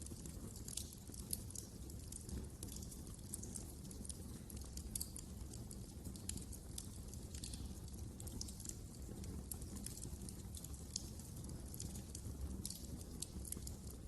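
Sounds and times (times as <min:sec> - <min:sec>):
low rumble of flames: 0:00.0 - 0:14.0
wood fire crackling: 0:00.0 - 0:14.0.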